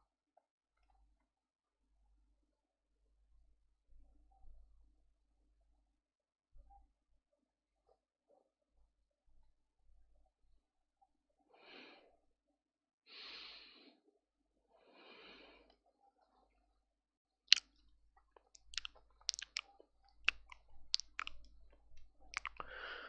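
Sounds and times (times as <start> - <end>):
person breathing softly: 11.5 - 12.2, 13.1 - 14.1, 14.7 - 15.8, 20.9 - 23.0.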